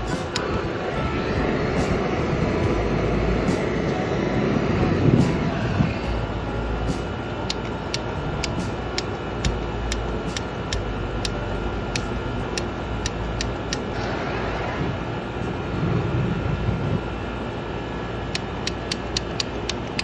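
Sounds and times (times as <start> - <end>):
torch flame rushing: 0.0 - 6.4, 13.7 - 17.1
sharp ticking: 0.0 - 14.0, 18.4 - 20.0
air-conditioning unit hum: 0.0 - 20.0.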